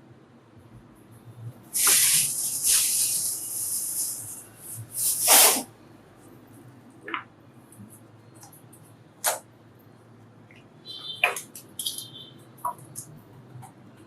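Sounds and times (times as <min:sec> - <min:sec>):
spraying hiss: 0:01.7 - 0:05.7.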